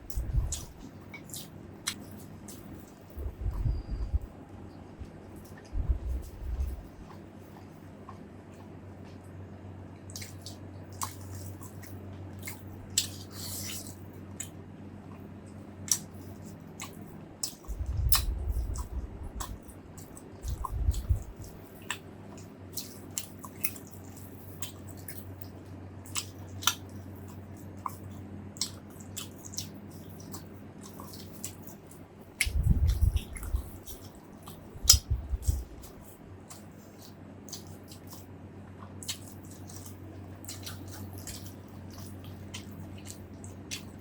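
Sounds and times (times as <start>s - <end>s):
dull low thumps: 0.0s - 0.8s, 3.1s - 4.3s, 5.0s - 7.0s, 17.7s - 19.6s, 20.4s - 21.4s, 32.5s - 33.7s, 34.8s - 36.0s
wet chewing and lip-smacking: 0.0s - 4.3s, 5.0s - 44.0s
steady low hum: 0.0s - 44.0s.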